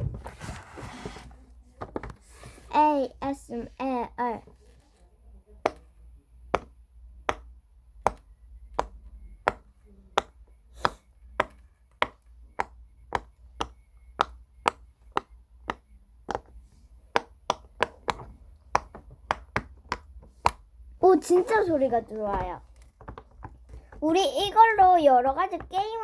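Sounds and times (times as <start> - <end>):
fidget toy bubbles popping: 6.6 - 20.6.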